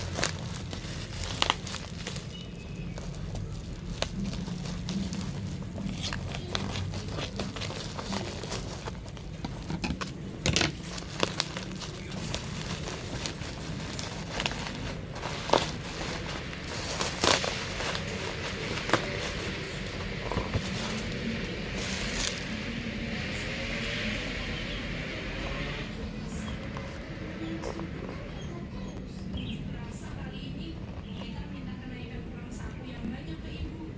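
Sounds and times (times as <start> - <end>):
packaging crinkling: 0.0 - 23.5
low hum: 0.0 - 33.9.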